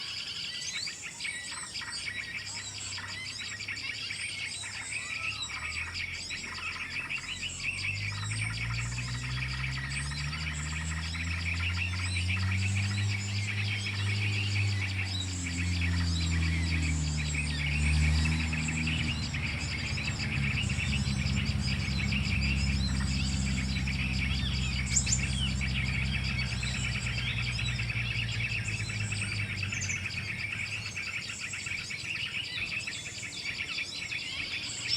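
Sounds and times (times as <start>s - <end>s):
small birds chirping: 0.0s - 34.9s
low droning hum: 7.8s - 31.1s.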